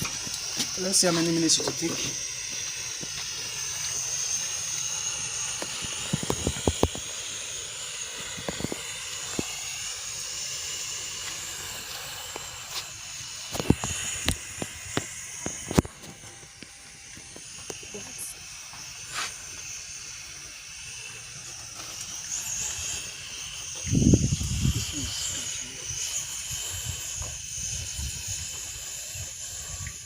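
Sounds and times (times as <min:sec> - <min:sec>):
crackles and pops of roasting meat: 0:00.0 - 0:09.6, 0:11.0 - 0:19.7
gas burner flame hissing: 0:00.0 - 0:30.0.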